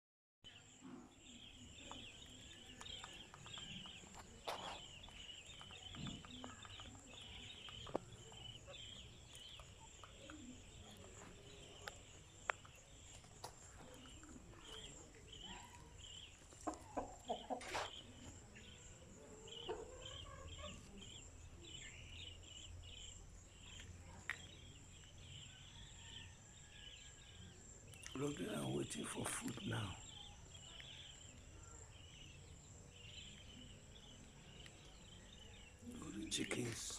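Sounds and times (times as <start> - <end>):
chickens clucking: 1.6 - 22.0.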